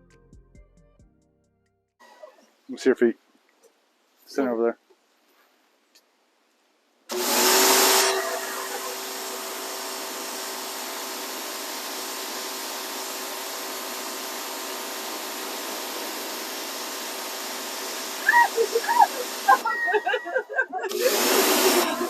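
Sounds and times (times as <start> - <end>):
pressure washer spraying: 7.1 - 22.0
pump humming: 7.1 - 22.0.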